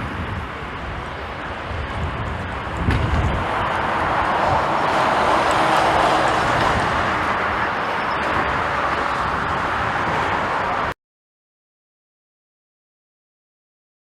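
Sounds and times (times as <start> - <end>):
jet engine roaring: 0.0 - 10.9.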